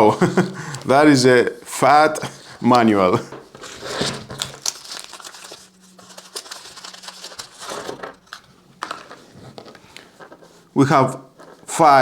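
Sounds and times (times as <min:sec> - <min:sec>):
packaging crinkling: 0:03.5 - 0:10.5.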